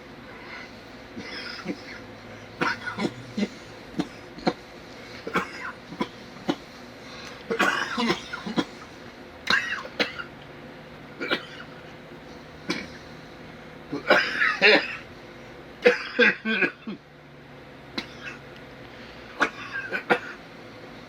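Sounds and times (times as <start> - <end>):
man clearing throat: 1.2 - 2.0, 2.6 - 4.6, 5.3 - 6.6, 7.5 - 10.3, 11.2 - 11.7, 12.7 - 13.0, 13.9 - 15.1, 15.8 - 17.0, 19.4 - 20.4
man coughing: 1.2 - 2.0, 2.6 - 4.6, 5.2 - 6.7, 7.5 - 8.9, 9.5 - 10.3, 11.2 - 11.7, 13.9 - 15.1, 15.8 - 17.0, 19.4 - 20.4.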